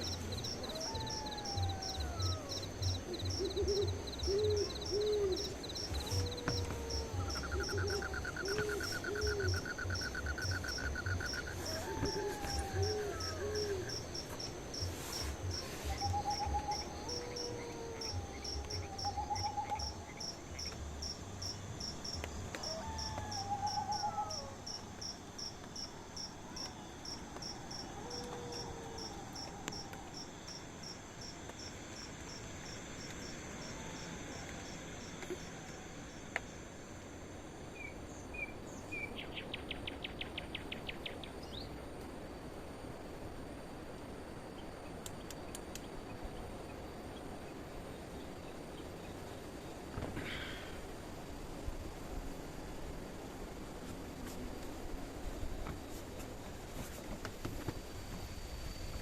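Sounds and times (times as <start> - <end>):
bird calls and trills: 0.0 - 25.0
insect chirping: 0.0 - 59.0
soft hoots: 0.1 - 20.0.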